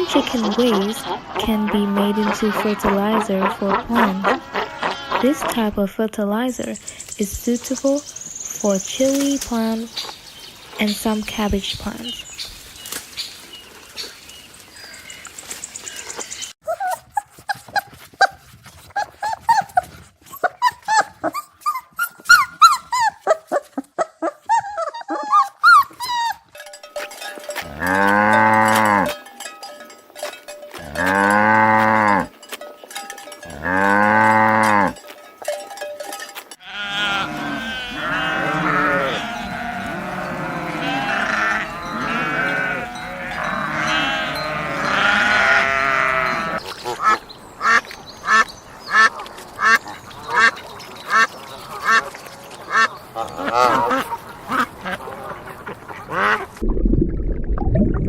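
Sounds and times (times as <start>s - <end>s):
farm animals calling: 0.0s - 5.8s, 13.8s - 29.2s, 30.7s - 35.5s, 36.3s - 56.6s
chirps and clucks: 46.5s - 56.6s.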